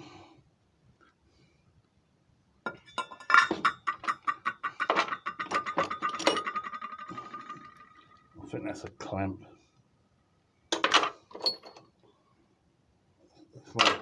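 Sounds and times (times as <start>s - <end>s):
metal parts clinking and knocking: 2.7s - 8.3s, 10.7s - 11.9s, 13.8s - 14.0s.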